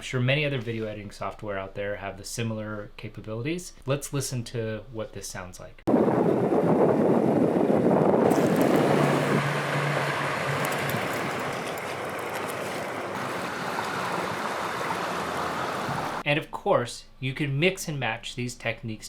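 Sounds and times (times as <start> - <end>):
wind: 5.9 - 16.2
river water rushing: 8.3 - 16.2.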